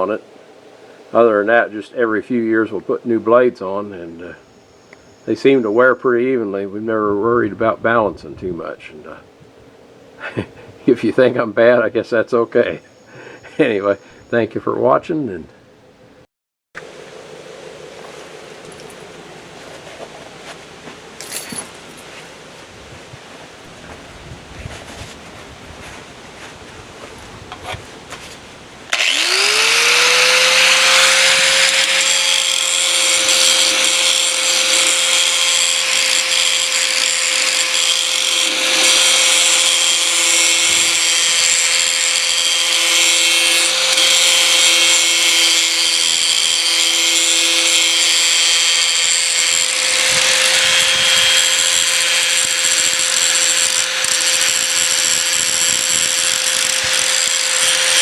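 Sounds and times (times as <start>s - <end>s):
grinder grinding steel blade: 28.9s - 58.0s.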